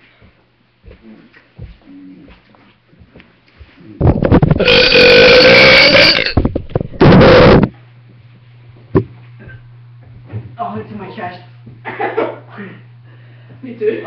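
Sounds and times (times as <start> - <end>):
person burping: 4.6 - 6.4, 7.0 - 7.7.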